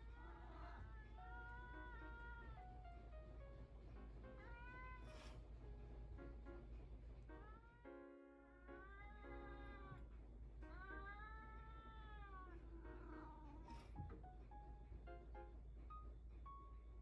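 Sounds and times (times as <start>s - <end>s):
soft plucked background music: 0.8s - 17.0s.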